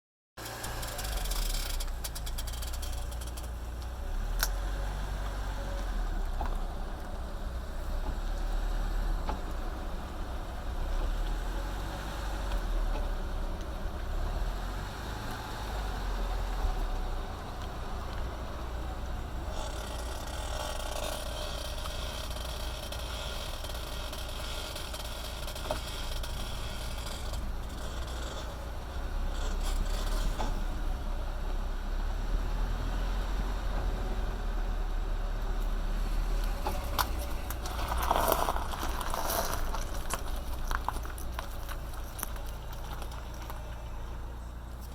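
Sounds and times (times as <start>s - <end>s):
wheel creaking squeak: 0.4s - 4.7s, 15.8s - 30.9s, 36.1s - 44.0s
steady low rumble: 34.3s - 44.9s.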